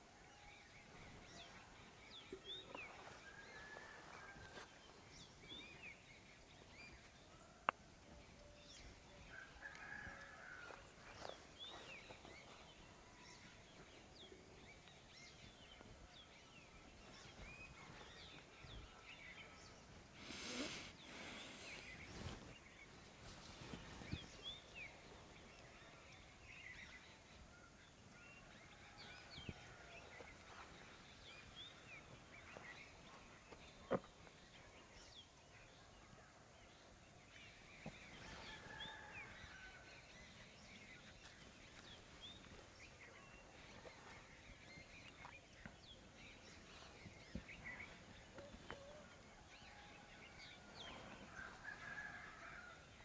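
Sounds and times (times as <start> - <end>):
birds chirping: 0.0 - 35.9
soft rustle: 20.2 - 25.9.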